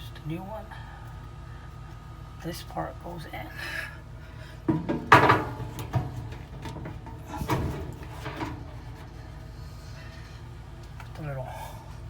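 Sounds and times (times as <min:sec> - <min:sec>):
parts knocking and clattering: 0:04.6 - 0:09.4.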